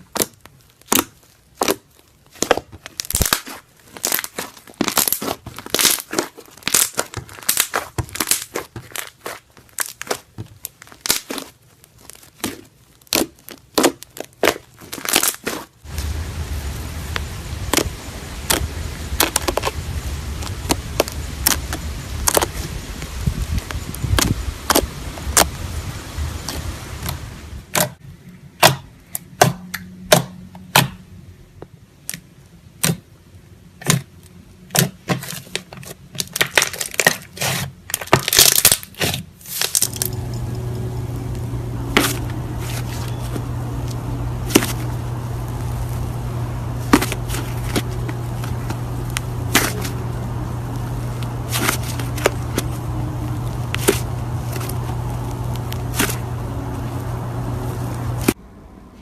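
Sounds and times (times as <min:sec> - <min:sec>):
slime clicking and crackling: 0:00.0 - 0:25.6, 0:33.8 - 0:58.4
steady low hum: 0:15.8 - 0:28.5, 0:39.8 - 0:59.0.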